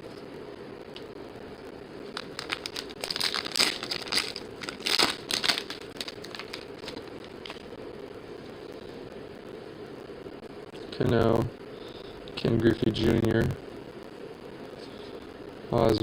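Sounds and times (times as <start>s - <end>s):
foil wrapper crinkling: 2.1s - 7.7s
foil pack being torn open: 2.2s - 7.7s.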